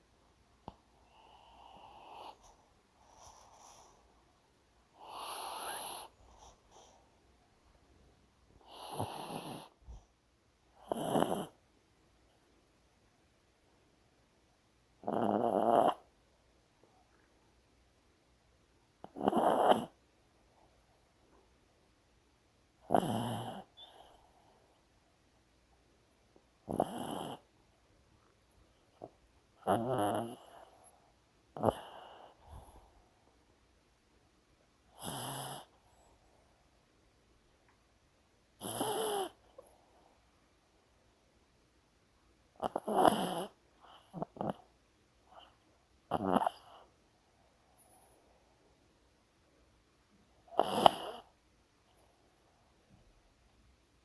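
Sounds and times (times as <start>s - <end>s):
quiet breathing: 0.0s - 12.7s, 22.8s - 33.8s, 34.6s - 37.0s, 38.6s - 41.2s, 42.6s - 53.3s
dog snoring: 1.0s - 4.0s, 4.9s - 7.0s, 8.6s - 10.0s, 10.7s - 11.6s, 15.0s - 16.1s, 19.0s - 20.0s, 22.8s - 24.6s, 26.6s - 27.5s, 29.0s - 31.0s, 31.6s - 32.9s, 34.9s - 36.0s, 38.6s - 39.8s, 42.6s - 44.7s, 46.1s - 46.9s, 50.5s - 51.4s.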